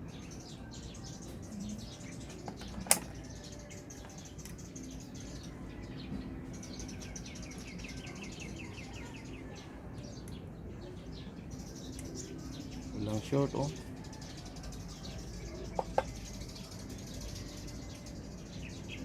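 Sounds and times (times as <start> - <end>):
birds chirping in trills: 0.0 - 19.0
sharp click: 2.5 - 3.2.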